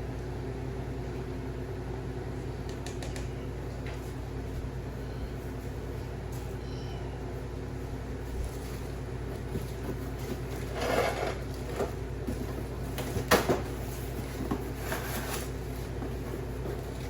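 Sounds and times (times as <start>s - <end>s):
steady low hum: 0.0s - 17.0s
metal cage parts scraping: 10.6s - 12.0s.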